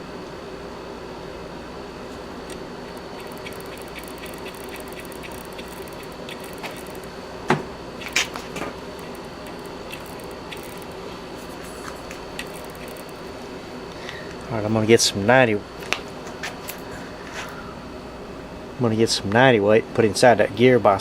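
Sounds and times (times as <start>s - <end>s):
steady hum: 0.0s - 21.0s
hands clicking and tapping on machine: 3.0s - 7.0s.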